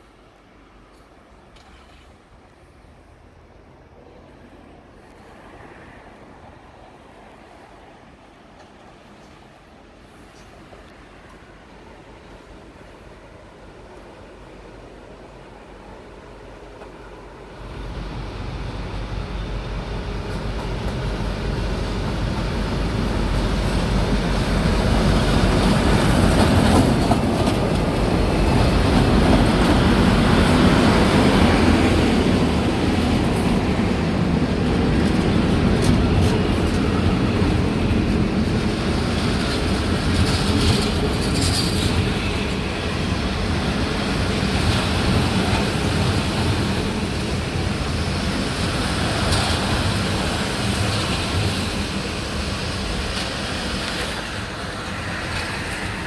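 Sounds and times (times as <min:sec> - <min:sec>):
diesel locomotive hauling carriages: 0:00.0 - 0:56.0.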